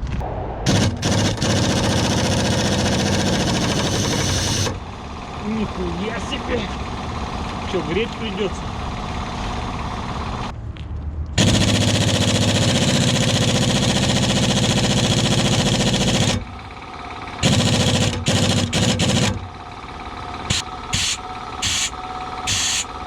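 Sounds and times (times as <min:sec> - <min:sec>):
impact wrench hammering: 0:00.7 - 0:04.8, 0:11.4 - 0:16.6, 0:17.4 - 0:19.6, 0:20.5 - 0:23.0.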